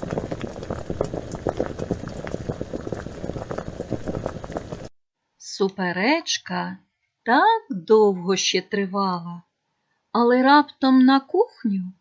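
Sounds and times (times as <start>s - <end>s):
multicooker bubbling and popping: 0.0s - 4.9s.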